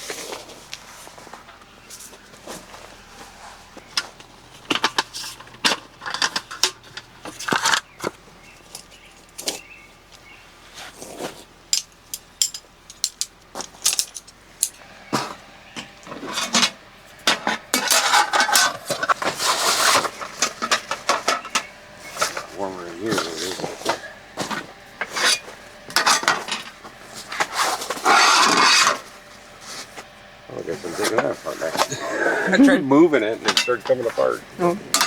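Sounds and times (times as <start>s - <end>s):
small objects clicking and clinking: 11.7s - 14.8s.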